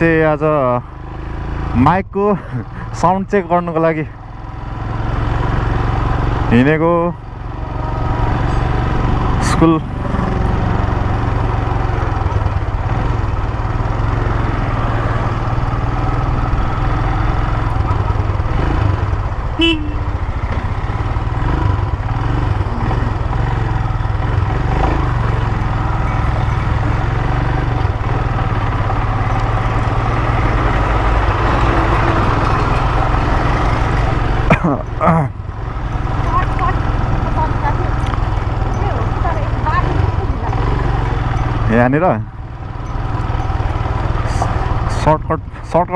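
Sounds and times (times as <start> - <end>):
motorcycle engine running: 0.0 - 45.9
road and wind noise: 0.0 - 45.9
horn toot: 19.6 - 20.1.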